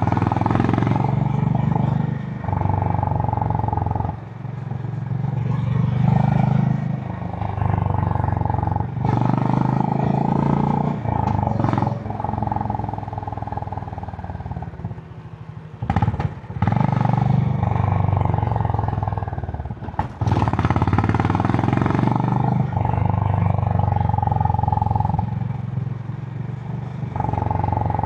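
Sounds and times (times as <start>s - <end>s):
motorcycle engine thumping exhaust: 9.0s - 14.0s, 14.6s - 22.8s.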